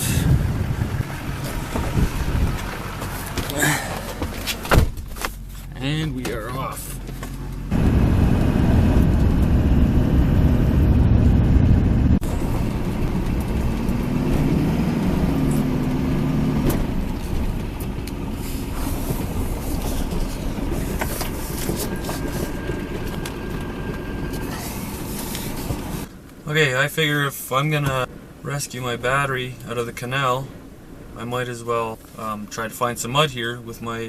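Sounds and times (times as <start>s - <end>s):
vehicle engine: 0.0s - 26.3s
road rumble: 0.0s - 34.0s.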